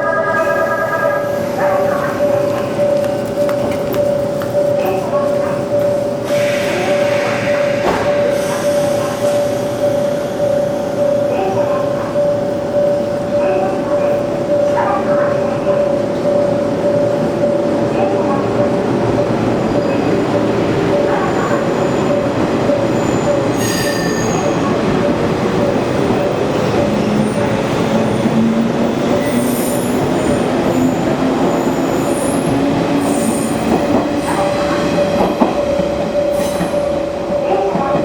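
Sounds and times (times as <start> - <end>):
crossing warning steady tone: 0.0 - 38.0
train wheel squeals: 22.9 - 24.7.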